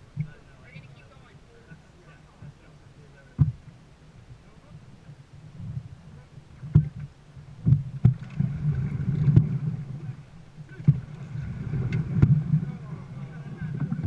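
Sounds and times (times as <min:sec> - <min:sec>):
water rumbling against hull: 0:00.0 - 0:14.0
paddle knocks and splashes: 0:03.3 - 0:03.7, 0:06.5 - 0:14.0.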